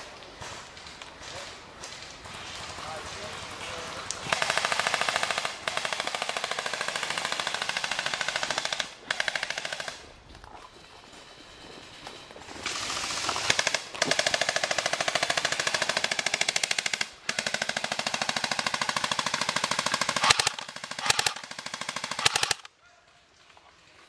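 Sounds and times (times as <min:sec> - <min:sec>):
airsoft rifle firing bursts: 0:04.3 - 0:10.0, 0:12.6 - 0:22.7.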